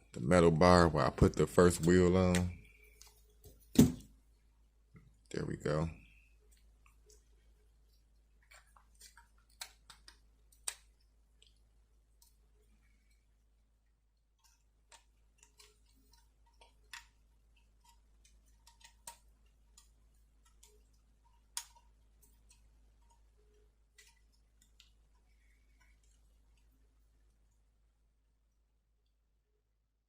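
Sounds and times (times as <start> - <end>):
small clicks and taps: 7.9 - 11.6, 14.4 - 26.8.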